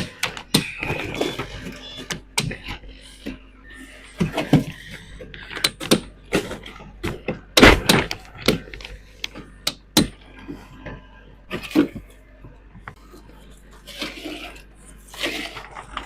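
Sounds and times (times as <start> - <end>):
scraping: 0.0 - 16.0
knocks and thuds: 5.6 - 8.7.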